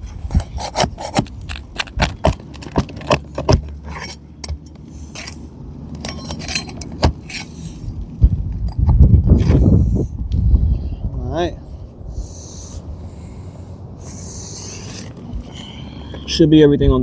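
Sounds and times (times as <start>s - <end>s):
metal tool scraping shingles: 0.0s - 8.0s, 14.0s - 15.6s.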